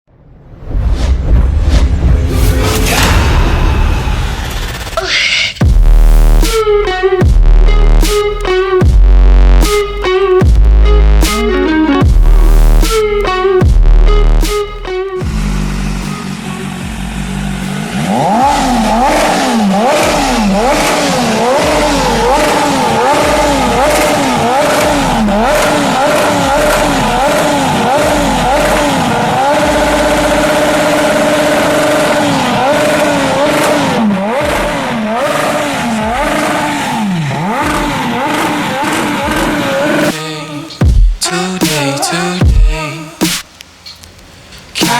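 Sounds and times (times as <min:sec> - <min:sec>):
motorcycle engine revving: 0:05.6 - 0:40.2.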